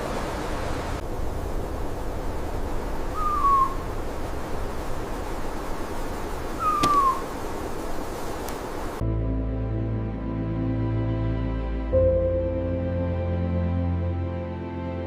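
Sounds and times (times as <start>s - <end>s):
ambient hiss: 0.0s - 9.0s
falling animal calls: 3.1s - 3.9s, 6.5s - 7.5s
music: 9.0s - 15.0s.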